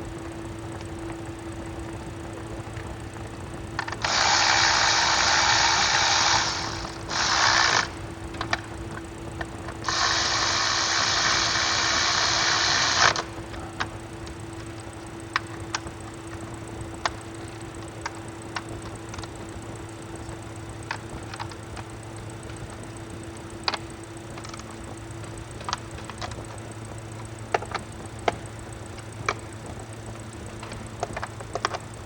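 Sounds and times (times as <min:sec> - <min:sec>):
power tool whirring: 0:03.8 - 0:14.0.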